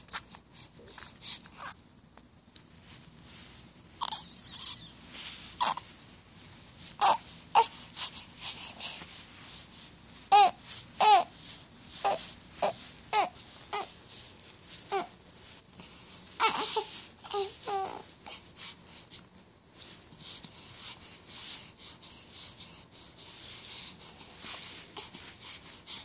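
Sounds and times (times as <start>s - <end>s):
baby fussing and crying: 4.0s - 5.9s, 7.0s - 9.0s, 10.3s - 14.0s, 14.8s - 15.2s, 16.4s - 18.5s.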